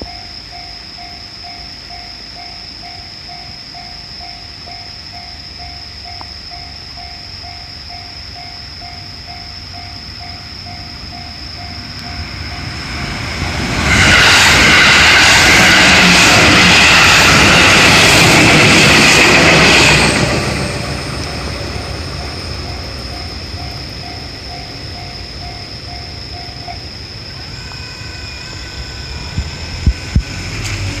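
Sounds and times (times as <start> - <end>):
railroad crossing bell ringing: 0.0 - 13.7, 18.8 - 26.9
steady high tone: 0.0 - 30.2
electric train rushing past: 0.0 - 31.0.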